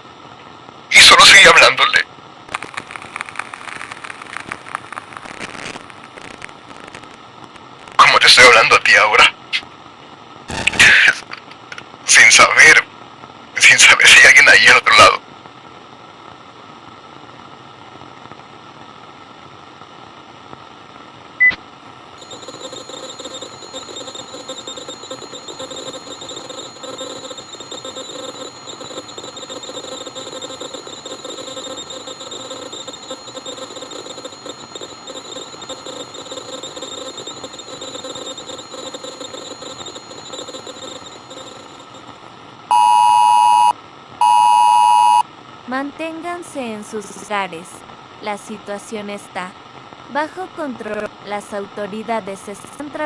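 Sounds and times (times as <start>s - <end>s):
loud electronic beep: 2.5s - 8.6s, 10.5s - 11.2s, 22.2s - 45.2s
faint steady whine: 2.5s - 9.3s, 10.5s - 11.2s, 22.2s - 45.2s
radio static hissing: 2.5s - 9.3s, 10.5s - 11.4s, 22.2s - 45.2s.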